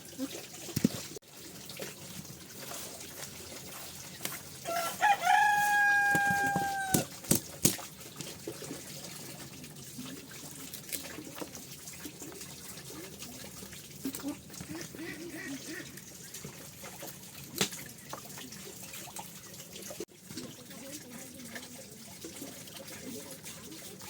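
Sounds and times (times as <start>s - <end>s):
water trickling: 0.0s - 24.0s
rooster crowing: 4.6s - 7.1s.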